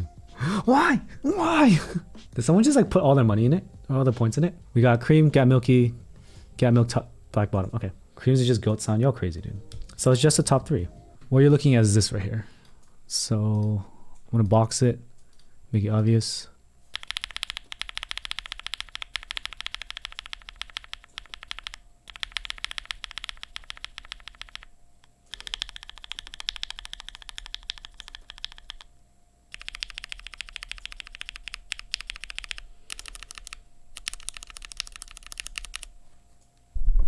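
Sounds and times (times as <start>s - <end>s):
fast mechanical keyboard typing: 16.9s - 24.7s, 25.3s - 28.9s, 29.5s - 35.9s.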